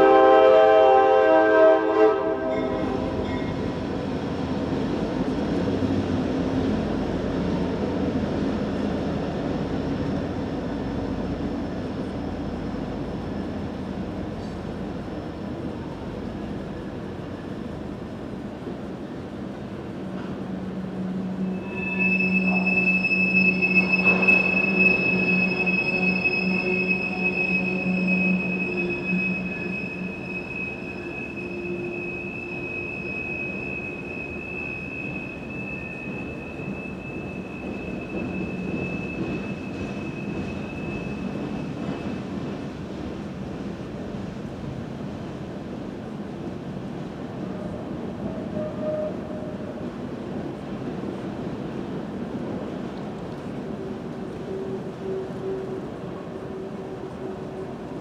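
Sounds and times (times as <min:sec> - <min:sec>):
locomotive horn blast: 0:00.0 - 0:03.2, 0:21.1 - 0:32.9, 0:48.3 - 0:49.7, 0:54.3 - 0:58.0
rumble of train cars rolling: 0:00.0 - 0:58.0
high wheel squeal: 0:21.3 - 0:42.2.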